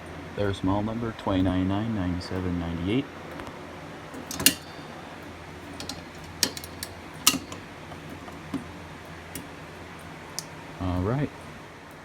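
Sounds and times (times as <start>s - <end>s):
fire alarm pull station clacks: 4.2s - 8.7s.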